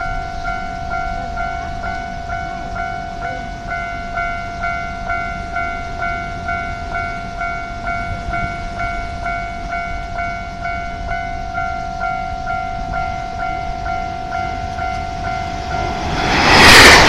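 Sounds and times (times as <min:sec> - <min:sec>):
level crossing warning bell: 0:00.0 - 0:16.3
low rumble: 0:14.8 - 0:17.0.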